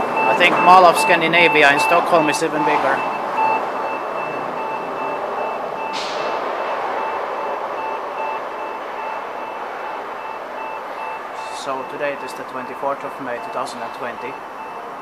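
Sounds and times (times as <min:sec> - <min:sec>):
rapid electronic beeping: 0:00.0 - 0:06.0
steady background noise: 0:00.0 - 0:15.0.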